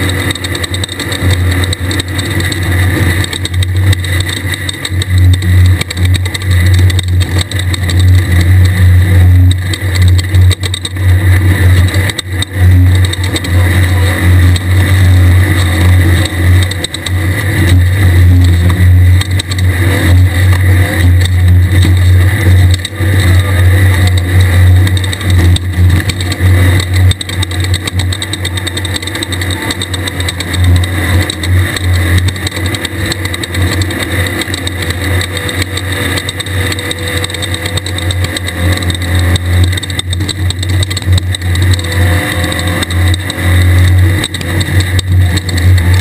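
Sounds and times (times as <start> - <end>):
buggy engine running hard: 0.0 - 46.0
steady rushing noise: 0.0 - 46.0.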